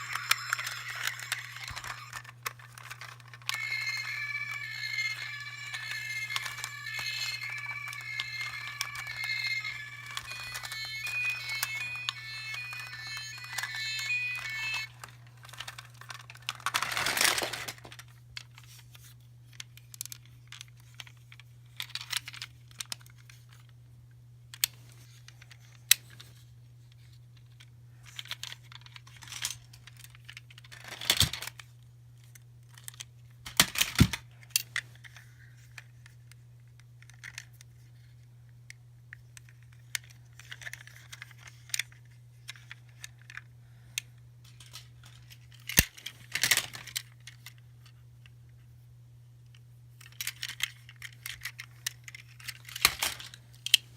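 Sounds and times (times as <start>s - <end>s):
wrappers crinkling and tearing: 13.1s - 18.0s.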